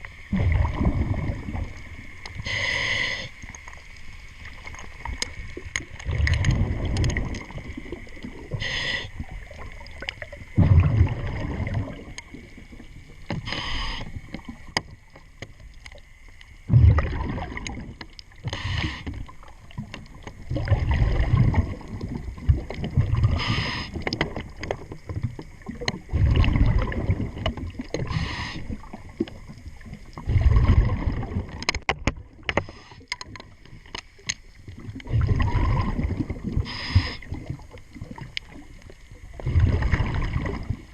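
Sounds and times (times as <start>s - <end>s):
bubbling underwater exhalations: 0.3s - 1.8s, 6.0s - 12.9s, 16.7s - 19.5s, 20.4s - 24.6s, 25.6s - 29.2s, 29.8s - 31.6s, 34.8s - 38.3s, 39.3s - 40.9s
hissing regulator inhalations: 2.4s - 3.4s, 8.5s - 9.2s, 13.3s - 14.2s, 18.4s - 19.2s, 23.3s - 24.0s, 28.1s - 28.8s, 36.6s - 37.3s.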